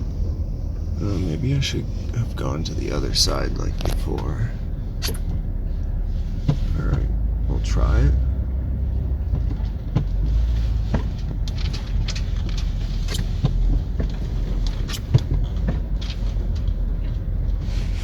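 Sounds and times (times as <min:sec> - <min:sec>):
minivan engine and tyres rumbling: 0:00.0 - 0:18.0
knocks and rattles over bumps: 0:09.2 - 0:17.6.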